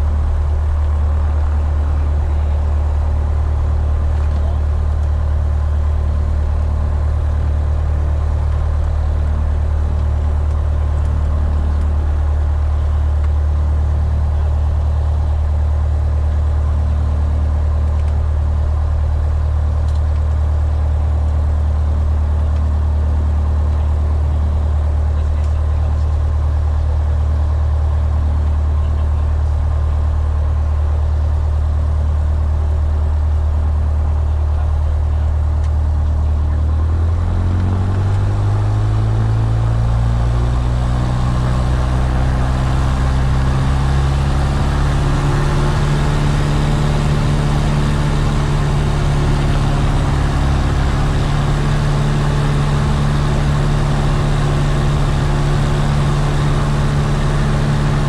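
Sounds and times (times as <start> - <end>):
aircraft engine and propeller droning: 36.7 - 58.0.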